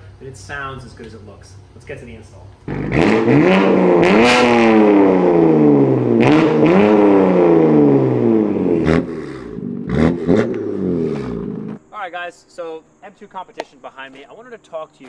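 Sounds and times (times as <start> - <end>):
car engine revving: 0.0 - 11.8
exhaust cracks: 0.0 - 15.0.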